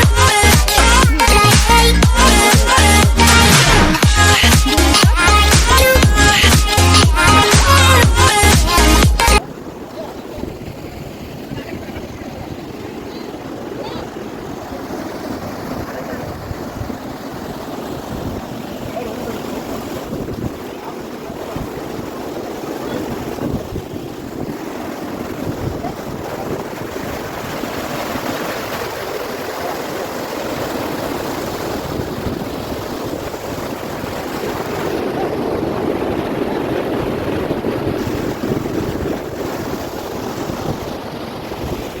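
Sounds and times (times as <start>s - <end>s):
waterfall rushing: 0.0s - 42.0s
wind buffeting microphone: 9.4s - 42.0s.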